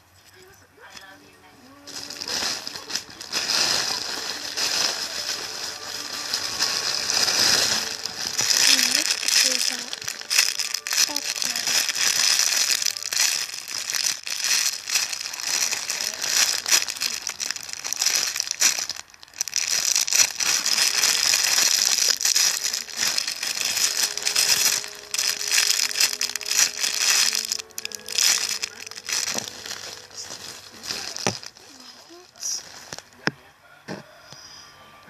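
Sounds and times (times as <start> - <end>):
plastic crinkling: 1.8 - 33.4
squishy toy being squeezed: 6.2 - 33.1.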